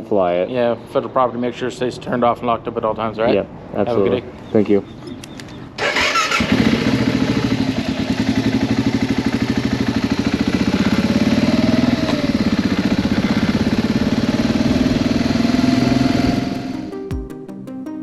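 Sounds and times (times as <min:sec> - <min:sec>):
motorcycle engine running at low revs: 0:06.4 - 0:17.1.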